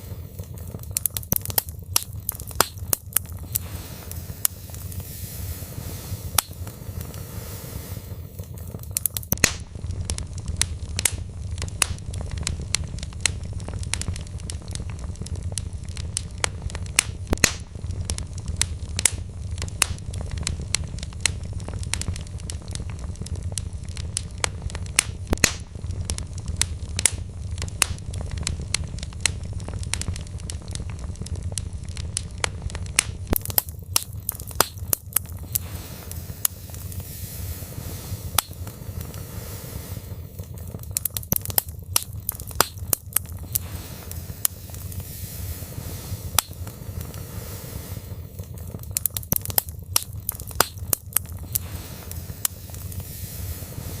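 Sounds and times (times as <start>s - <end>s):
low steady rumble: 0.0s - 16.0s, 32.6s - 54.0s
wood fire crackling and popping: 0.0s - 54.0s.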